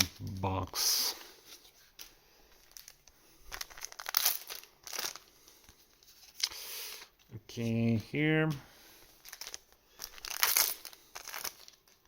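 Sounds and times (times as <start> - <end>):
foil wrappers crinkling: 1.5 - 7.1, 9.2 - 12.0.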